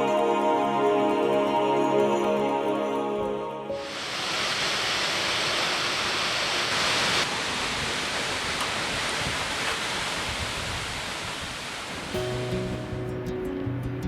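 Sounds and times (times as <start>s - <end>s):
waterfall rushing: 3.7s - 13.2s.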